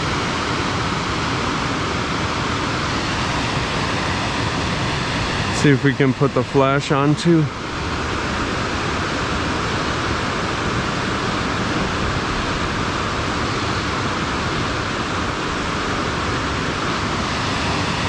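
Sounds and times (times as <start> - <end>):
water rushing through dam: 0.0 - 18.0.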